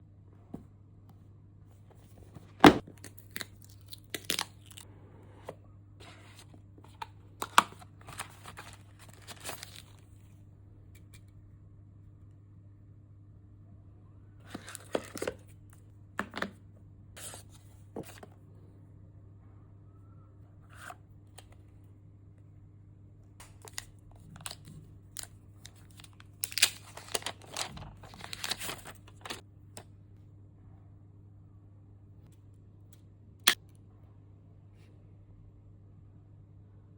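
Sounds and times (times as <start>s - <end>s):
packaging crinkling and tearing: 2.8s - 4.8s, 7.4s - 10.1s, 23.4s - 29.4s
packaging tearing and crinkling: 24.4s - 29.4s.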